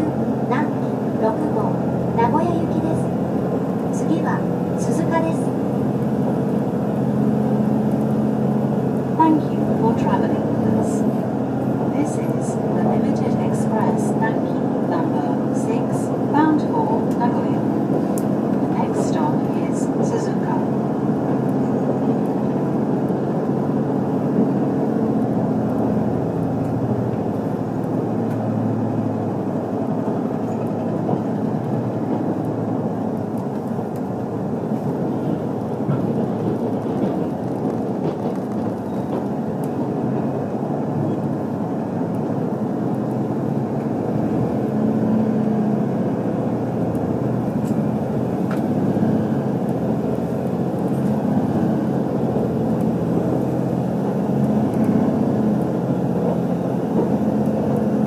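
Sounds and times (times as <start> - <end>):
diesel engine humming: 0.0 - 58.0
wheels rumbling on rail: 0.0 - 58.0.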